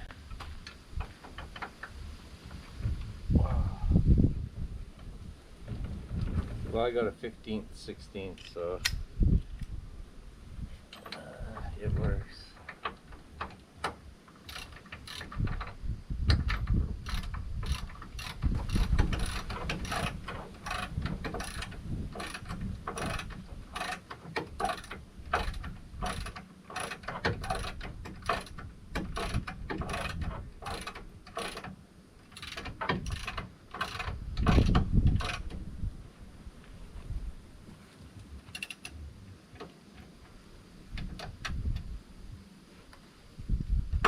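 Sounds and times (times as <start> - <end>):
ratchet wrench clicking: 14.5 - 15.6, 16.3 - 24.0, 24.6 - 31.7, 32.3 - 35.5.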